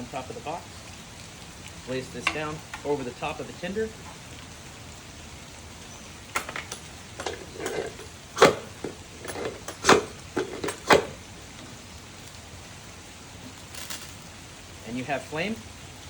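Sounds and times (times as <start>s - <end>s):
rain hiss: 0.0s - 16.0s
ferro rod scraping: 6.4s - 11.2s.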